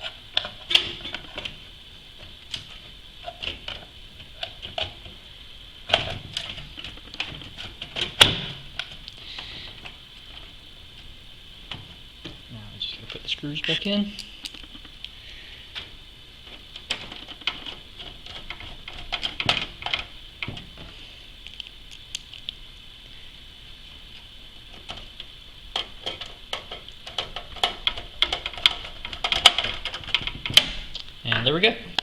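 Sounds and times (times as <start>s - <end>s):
faint high hiss: 20.0s - 25.8s.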